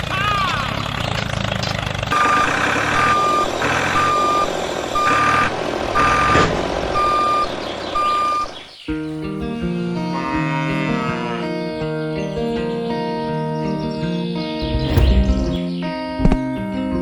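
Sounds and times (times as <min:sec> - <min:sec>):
vehicle reversing beeper: 0:02.1 - 0:08.6, 0:14.6 - 0:15.6
plucked-string music: 0:08.9 - 0:17.0
engine running: 0:14.6 - 0:15.6.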